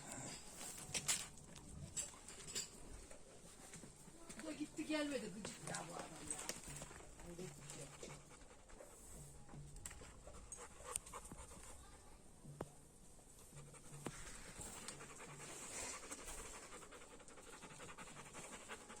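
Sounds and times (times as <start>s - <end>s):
dog panting: 3.0s - 12.2s, 13.3s - 19.0s.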